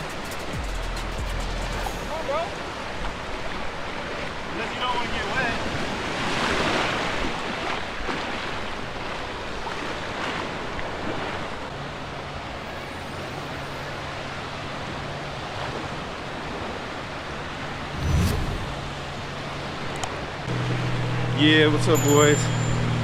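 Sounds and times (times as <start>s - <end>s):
surf washing onto beach: 2.1s - 11.7s.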